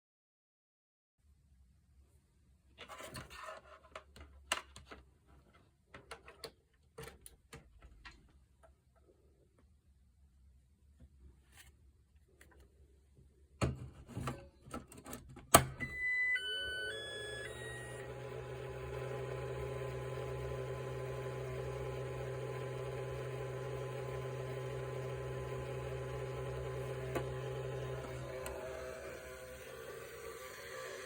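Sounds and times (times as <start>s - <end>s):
beeping start-up melody: 15.8s - 18.4s
battery charger buzzing hum: 16.4s - 31.0s.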